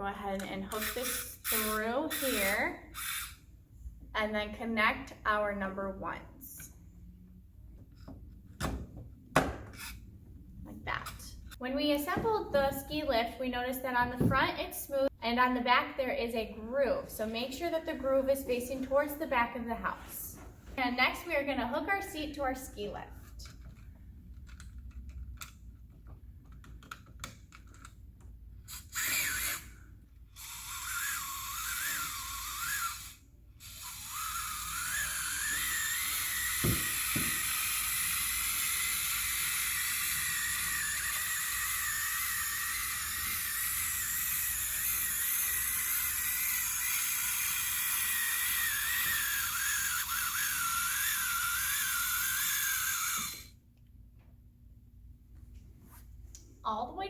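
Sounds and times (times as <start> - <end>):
plastic toy parts clicking: 23.4 - 28.0.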